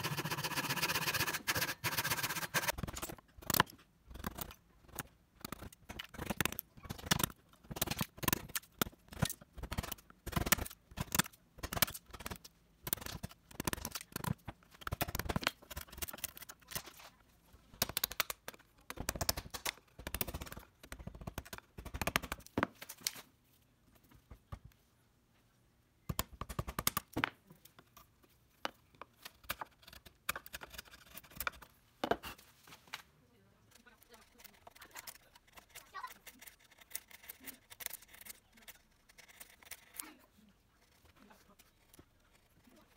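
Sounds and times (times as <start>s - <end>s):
hand tools scraping wood: 0.0s - 3.2s, 33.8s - 42.9s.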